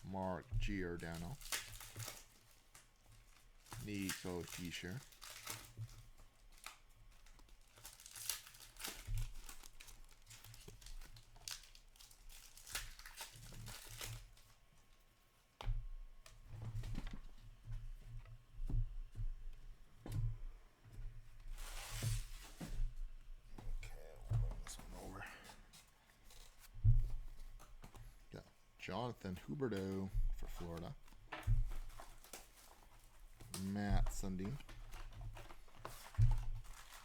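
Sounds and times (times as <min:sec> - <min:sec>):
card pack wrappers tearing: 0:00.0 - 0:14.6, 0:28.9 - 0:31.0, 0:31.7 - 0:37.0
cards rustling and clicking: 0:00.0 - 0:14.6, 0:23.6 - 0:37.0.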